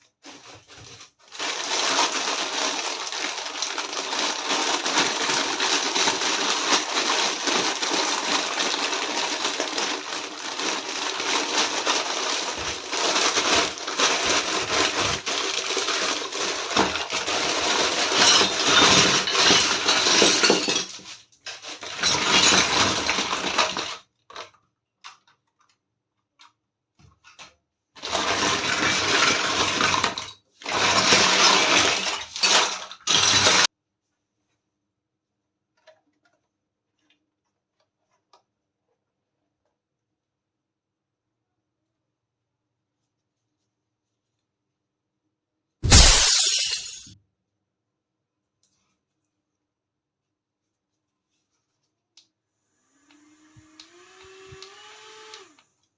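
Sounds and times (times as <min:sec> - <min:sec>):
plastic packaging crinkling: 0:00.2 - 0:18.8
toy kitchen pieces clinking: 0:01.4 - 0:24.0, 0:45.8 - 0:47.2.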